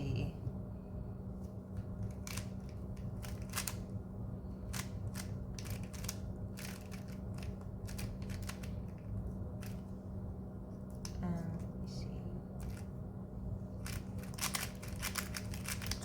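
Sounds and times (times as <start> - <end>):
speed cube layers clicking: 13.8 - 16.0.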